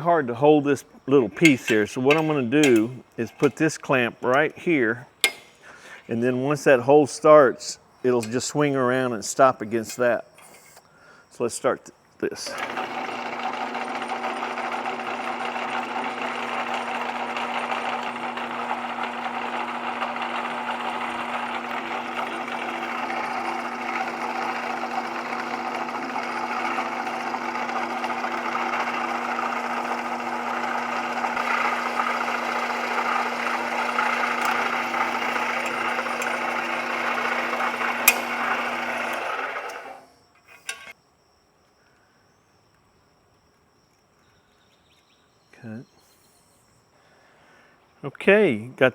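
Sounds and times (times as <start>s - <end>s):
drill press boring: 1.3s - 6.1s, 12.4s - 41.0s.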